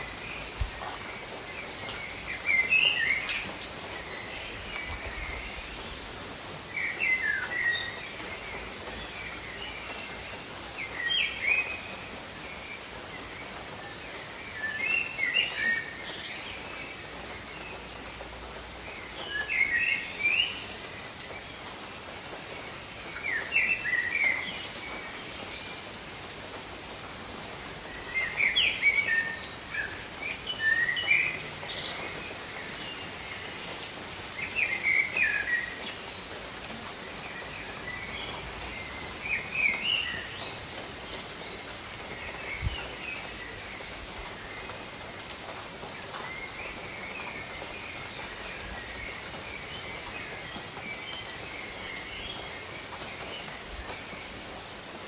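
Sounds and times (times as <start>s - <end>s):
songbird singing: 0.0s - 12.6s, 27.1s - 45.1s
gentle rain: 0.0s - 55.0s.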